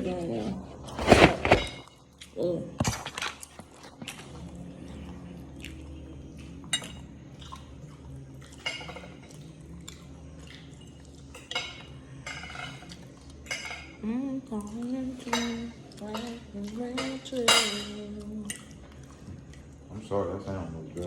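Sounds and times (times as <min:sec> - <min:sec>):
chewing with crunches: 0:00.2 - 0:13.6, 0:15.8 - 0:20.1
cutlery and dishes clinking: 0:00.8 - 0:02.0, 0:06.7 - 0:07.6, 0:08.5 - 0:09.4, 0:11.3 - 0:14.0, 0:15.2 - 0:18.7.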